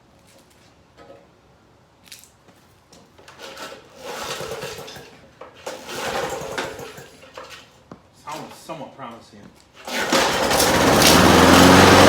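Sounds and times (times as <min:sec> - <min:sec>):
lawn mower recoil starter pulls: 0:03.3 - 0:07.6, 0:09.8 - 0:12.0.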